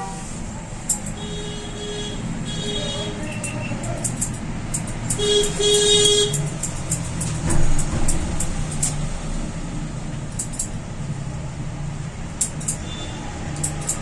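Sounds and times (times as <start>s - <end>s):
street traffic rumble: 0.0s - 14.0s
sharp clicks: 3.4s - 9.0s.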